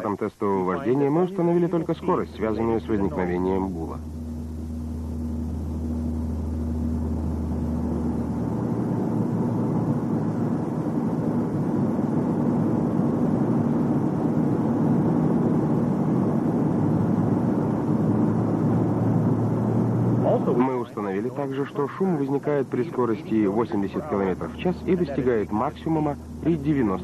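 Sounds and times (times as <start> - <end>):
car road and drivetrain noise: 6.0 - 20.9.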